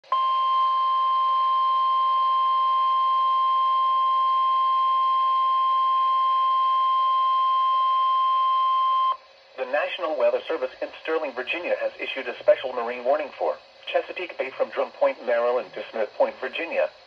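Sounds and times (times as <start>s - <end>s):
steady warning alarm beep: 0.1s - 9.2s
faint radio hiss: 9.1s - 17.0s.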